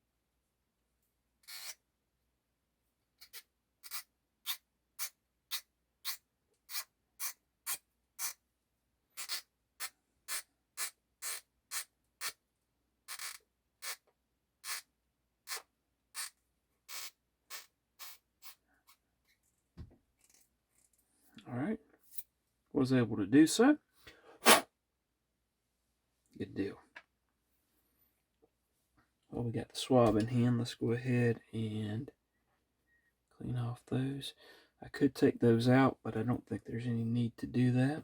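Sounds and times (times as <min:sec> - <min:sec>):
swab rubbing through knife part: 0:01.4 - 0:01.8.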